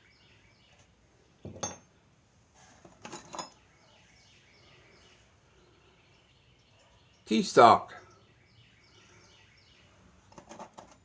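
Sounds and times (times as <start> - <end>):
metal tools clinking: 1.5 - 1.9, 2.8 - 3.6, 10.3 - 11.0.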